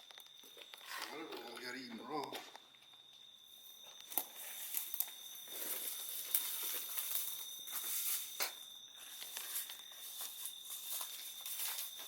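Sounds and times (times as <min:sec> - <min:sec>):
footsteps: 0:02.2 - 0:12.0
rustling: 0:04.0 - 0:12.0.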